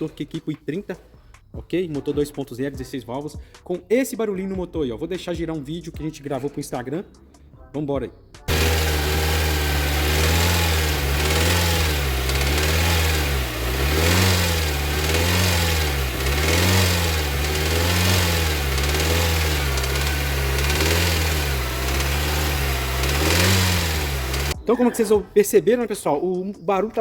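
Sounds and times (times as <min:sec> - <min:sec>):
car engine revving lightly: 0:08.5 - 0:24.6.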